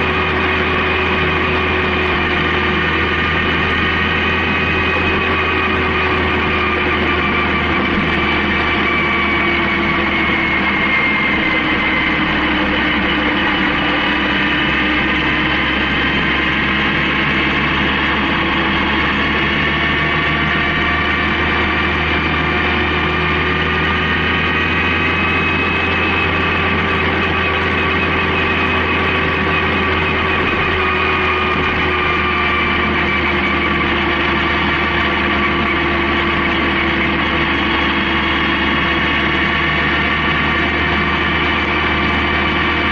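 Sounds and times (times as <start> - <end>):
motorcycle engine cruising: 0.0 - 42.9.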